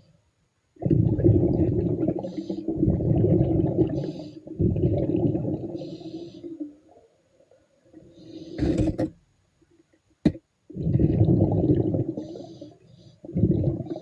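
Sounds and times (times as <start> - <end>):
diver exhaling bubbles: 0.8 - 6.6, 10.7 - 12.6, 13.2 - 14.0
breathing gear hiss: 8.0 - 8.8.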